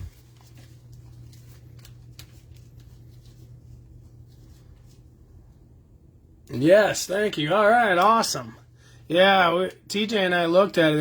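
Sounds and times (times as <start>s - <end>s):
trading cards clicking and rustling: 0.0s - 3.8s
steady low hum: 0.0s - 11.0s.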